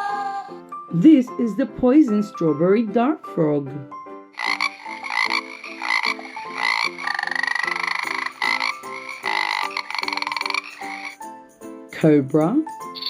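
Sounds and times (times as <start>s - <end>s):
frog chirping and buzzing trills: 4.4s - 11.2s.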